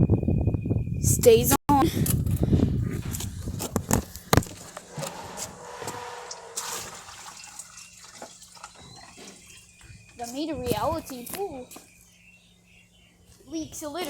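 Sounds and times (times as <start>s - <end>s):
water splashing in dishwasher: 6.5s - 9.6s.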